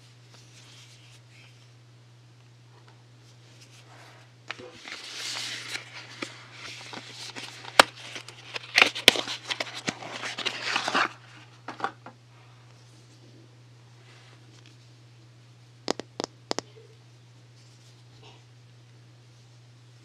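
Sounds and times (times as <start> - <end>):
packaging rustling and crinkling: 4.5 - 12.0.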